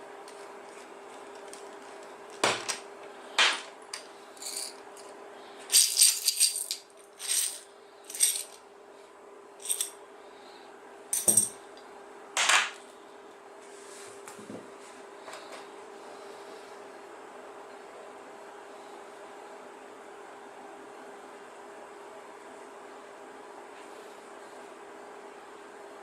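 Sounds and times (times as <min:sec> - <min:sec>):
steady low hum: 0:00.0 - 0:26.0
metal tools clinking: 0:04.4 - 0:05.1, 0:05.7 - 0:08.6, 0:09.6 - 0:09.9.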